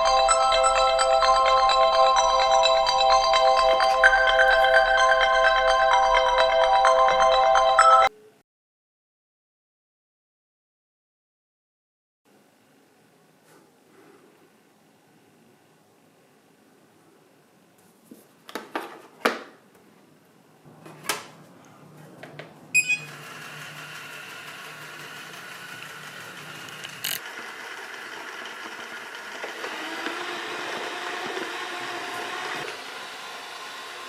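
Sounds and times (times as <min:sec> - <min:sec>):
vacuum cleaner running: 0:22.8 - 0:34.0.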